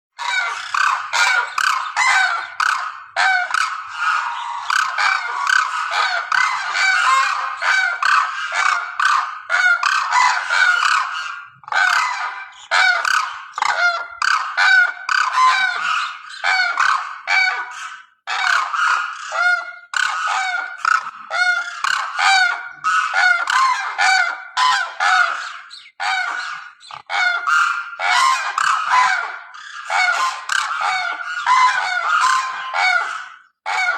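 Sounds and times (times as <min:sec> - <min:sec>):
geese honking: 0:00.2 - 0:33.9.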